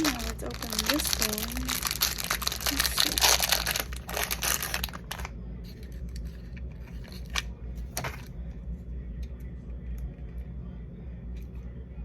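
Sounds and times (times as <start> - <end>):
plastic packaging crinkling: 0.0 - 5.3.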